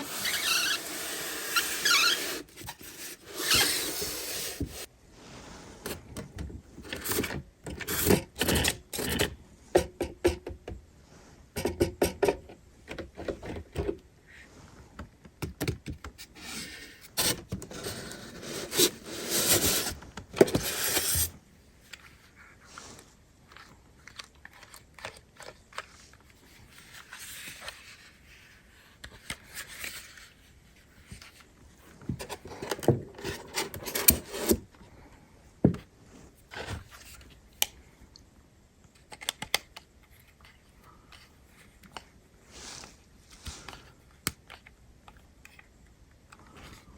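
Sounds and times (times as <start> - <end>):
packaging scraping and clicking: 16.4 - 21.3.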